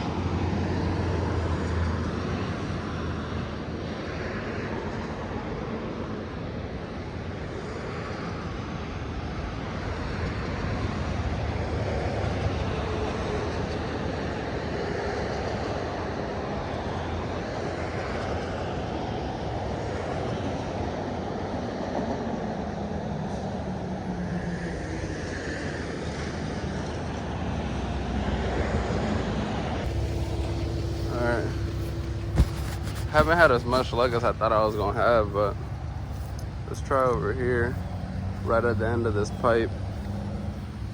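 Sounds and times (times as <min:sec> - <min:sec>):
road noise: 0:23.8 - 0:40.9
vehicle engine: 0:29.8 - 0:40.9.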